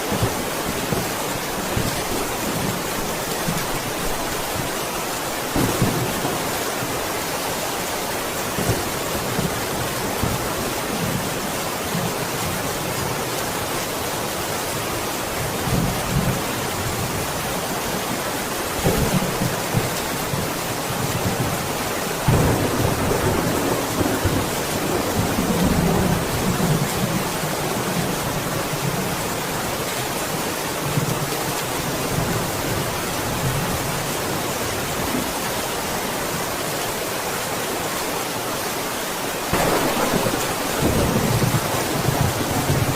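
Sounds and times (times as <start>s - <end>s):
heavy rain: 0.0s - 42.9s
distant thunder rumbling: 5.6s - 7.0s, 22.2s - 27.3s, 39.5s - 42.9s.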